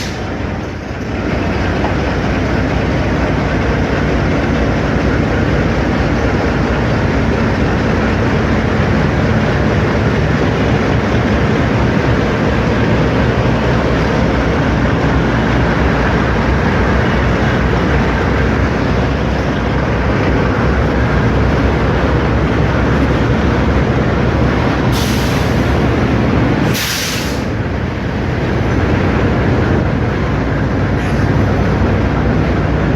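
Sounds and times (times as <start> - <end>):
air brake hiss: 0.0 - 0.3, 24.9 - 25.8, 26.6 - 27.6
train wheels rumbling: 0.0 - 32.9.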